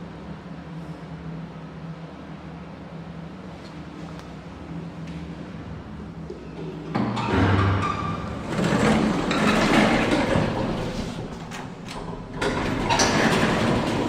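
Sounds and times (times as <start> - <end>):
lift doors sliding with knocks: 6.5 - 14.0.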